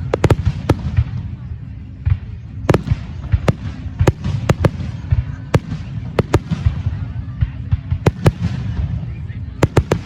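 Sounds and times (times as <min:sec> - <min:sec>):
sharp firework cracks: 0:00.0 - 0:01.1, 0:02.7 - 0:06.8, 0:09.6 - 0:10.0.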